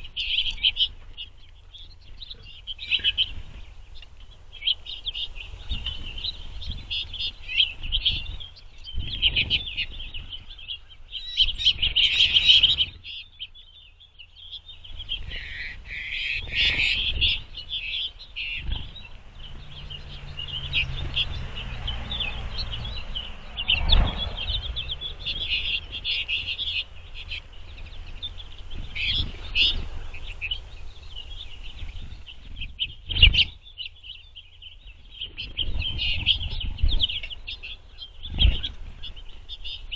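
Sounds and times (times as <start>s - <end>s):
birds thumping on feeder: 0.0s - 39.9s
finches twittering and chirping: 0.0s - 39.9s.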